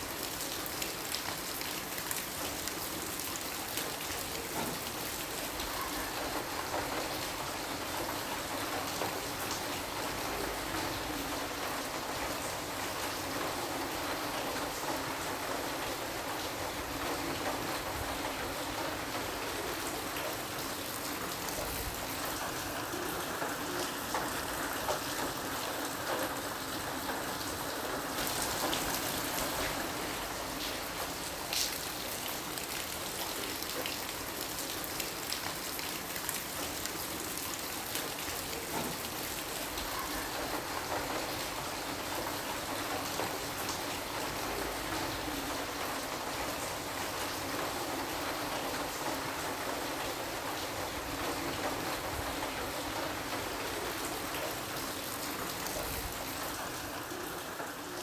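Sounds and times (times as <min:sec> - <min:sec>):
steady rain hiss: 0:00.0 - 0:58.0
raindrops ticking: 0:14.3 - 0:58.0.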